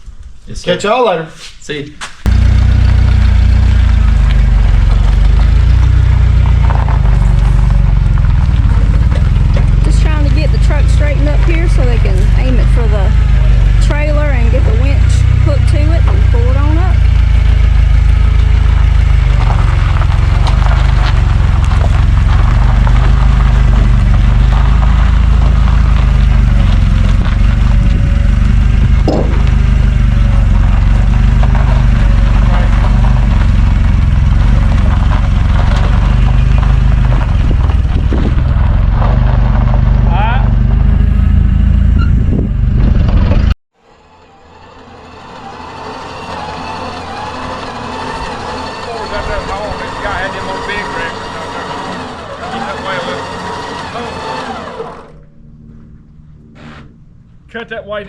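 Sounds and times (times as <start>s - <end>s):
vehicle engine idling: 2.2s - 58.0s
knock: 29.1s - 29.5s.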